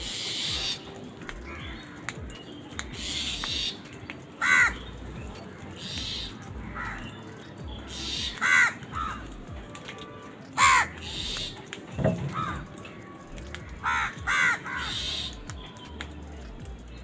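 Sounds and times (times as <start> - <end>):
crows cawing: 0.0 - 5.0, 5.8 - 9.6, 10.6 - 12.9, 13.6 - 15.6.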